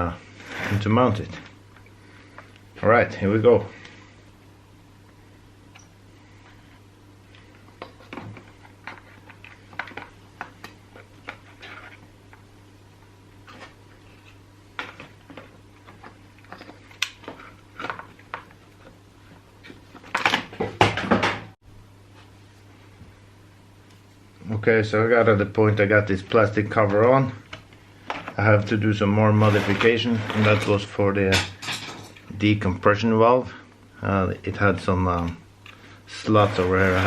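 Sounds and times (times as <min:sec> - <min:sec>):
plastic parts handled and fitted: 0:07.8 - 0:12.4.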